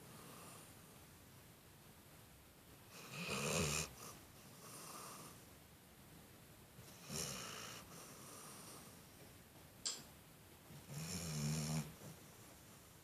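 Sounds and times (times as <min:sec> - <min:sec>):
dog snoring: 0:02.9 - 0:05.4, 0:06.8 - 0:09.0, 0:10.8 - 0:12.1
dog breathing softly: 0:06.9 - 0:09.2.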